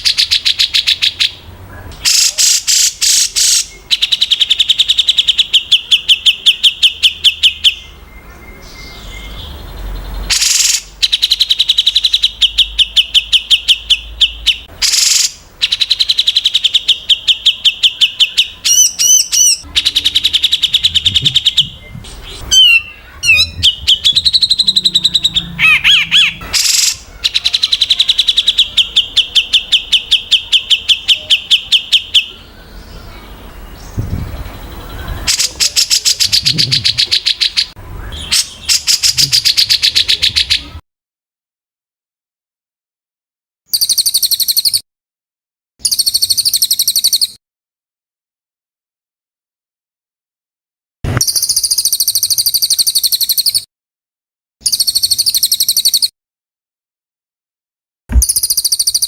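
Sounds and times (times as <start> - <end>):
harsh raspy bird calls: 0.0 - 8.0, 9.0 - 33.4, 34.6 - 40.8
whistled bird phrases: 0.0 - 40.8, 43.7 - 44.8, 45.8 - 47.4, 51.2 - 53.7, 54.6 - 56.1, 58.2 - 59.0
songbird fast repeated notes: 10.3 - 32.3.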